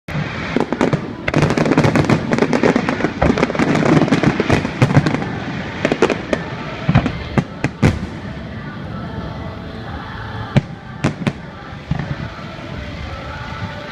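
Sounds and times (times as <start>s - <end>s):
fireworks booms: 0.1s - 8.8s, 10.4s - 12.8s
fireworks bangs and crackling: 0.1s - 13.9s.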